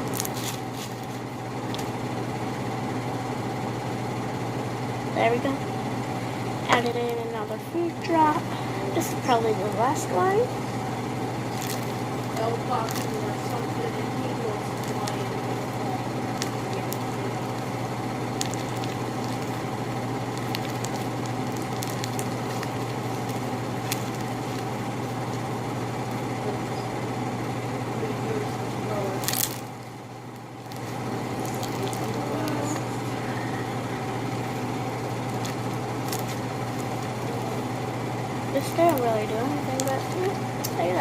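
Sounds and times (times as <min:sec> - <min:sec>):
slime squished by hand: 0:00.0 - 0:02.0, 0:11.4 - 0:26.3, 0:29.2 - 0:37.9
low machine hum: 0:00.0 - 0:41.0.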